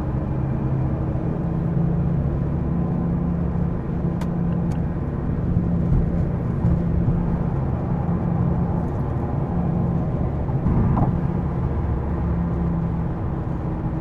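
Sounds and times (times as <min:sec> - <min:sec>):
car droning hum: 0:00.0 - 0:14.0.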